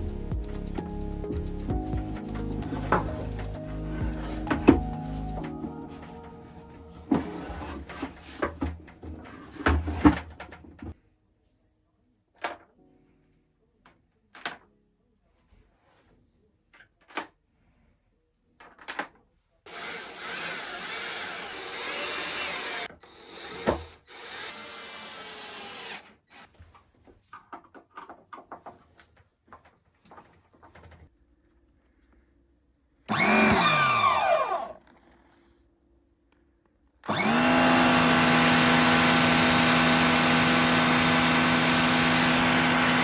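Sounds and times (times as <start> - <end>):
electric power tool running: 0.0 - 8.1, 19.7 - 26.5, 33.1 - 34.8, 37.0 - 43.0.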